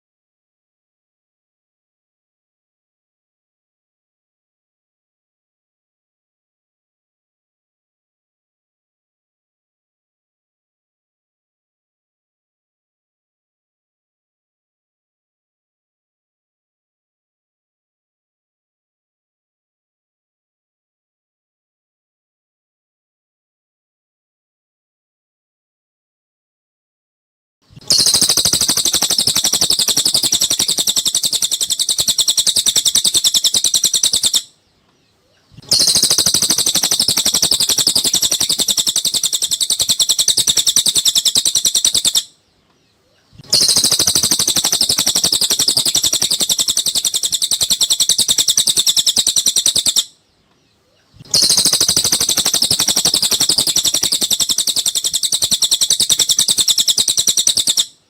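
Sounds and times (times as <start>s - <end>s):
bird trilling: 27.8s - 34.5s, 35.6s - 42.4s, 43.4s - 50.1s, 51.3s - 58.0s.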